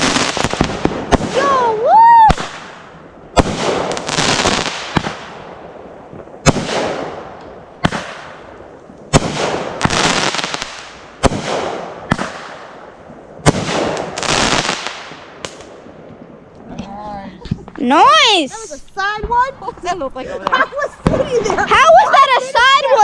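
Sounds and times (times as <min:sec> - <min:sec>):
fireworks bangs: 0:00.0 - 0:16.6, 0:20.8 - 0:21.7
dense fireworks crackling: 0:00.0 - 0:16.7.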